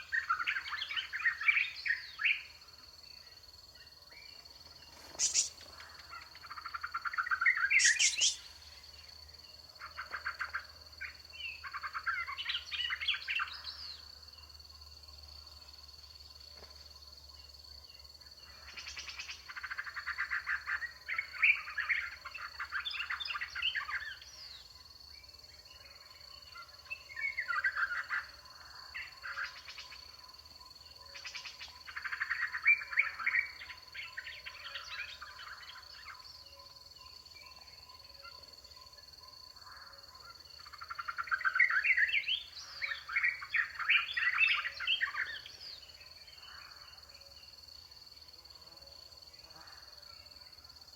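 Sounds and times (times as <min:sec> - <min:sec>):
wild dogs twittering: 0:05.1 - 0:06.3, 0:07.4 - 0:08.5.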